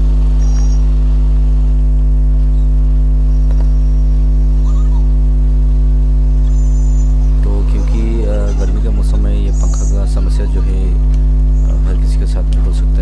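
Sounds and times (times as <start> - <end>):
low electrical mains hum: 0.0 - 13.0
faint high chirps: 0.3 - 0.9, 2.4 - 5.2, 6.3 - 12.2.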